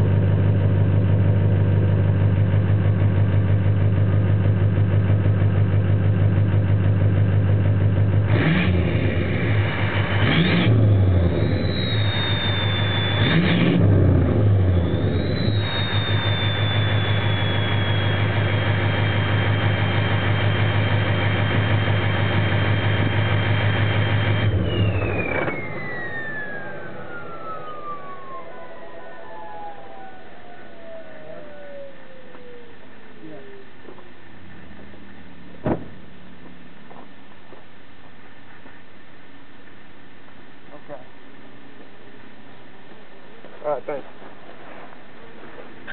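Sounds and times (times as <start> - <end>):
diesel engine idling and revving: 0.0 - 37.3
turbo whistle: 11.2 - 32.8.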